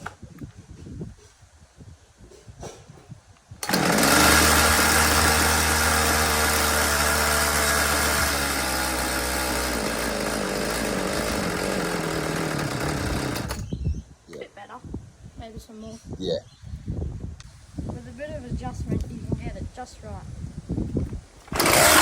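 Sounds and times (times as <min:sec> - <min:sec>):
chainsaw engine running: 0:03.6 - 0:13.6, 0:21.5 - 0:22.0.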